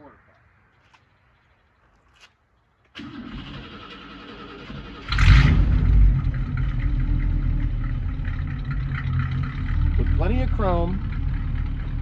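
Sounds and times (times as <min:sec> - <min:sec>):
car engine revving and idling: 0:03.4 - 0:12.0.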